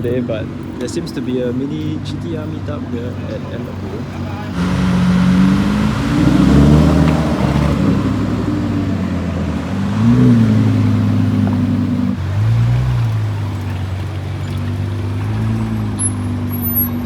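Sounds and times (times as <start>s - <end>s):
car engine running: 0.0s - 17.0s
engine throttle blips: 1.9s - 17.0s.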